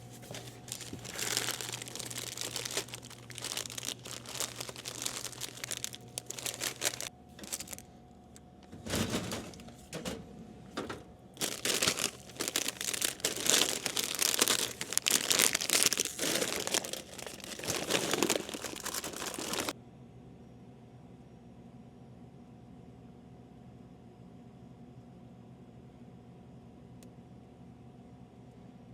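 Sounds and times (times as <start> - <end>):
plastic packaging crinkling: 0.0 - 7.8, 11.4 - 19.8.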